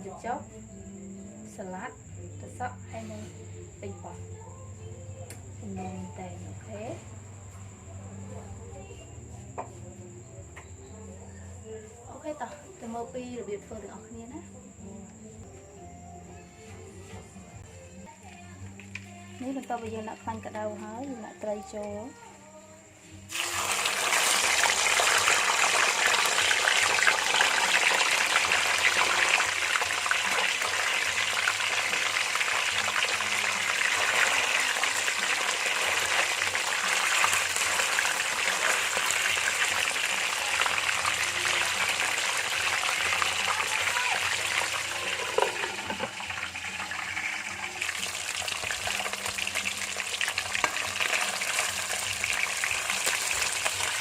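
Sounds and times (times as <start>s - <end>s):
fish sizzling in hot oil: 23.3s - 54.0s.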